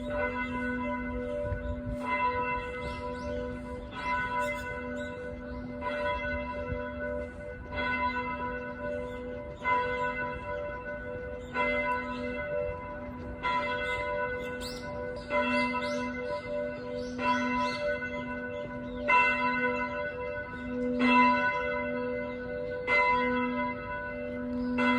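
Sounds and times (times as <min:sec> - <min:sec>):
church bell tolling: 0:00.0 - 0:24.9.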